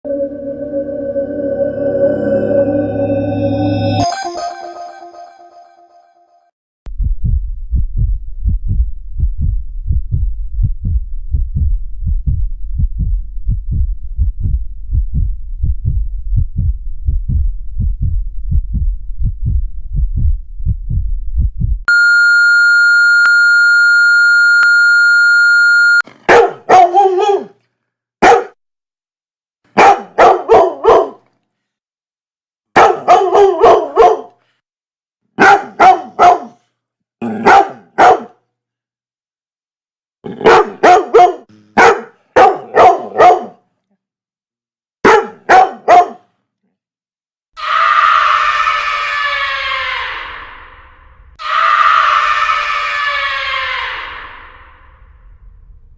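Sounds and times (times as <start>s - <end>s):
rapid heartbeat thumping: 6.9s - 21.9s
telephone high beep: 21.9s - 26.0s
dog barking: 26.2s - 27.6s, 28.2s - 28.6s, 29.7s - 31.3s, 32.8s - 34.4s, 35.4s - 38.4s, 40.3s - 43.6s, 45.0s - 46.3s.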